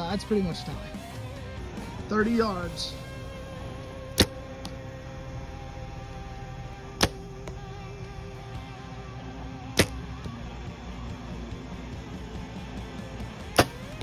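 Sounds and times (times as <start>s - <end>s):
background music: 0.0s - 14.0s
bow string snap: 4.1s - 5.5s, 9.7s - 10.4s, 13.5s - 14.0s
arrow thud on target: 4.2s - 4.8s, 9.8s - 10.0s, 13.5s - 14.0s.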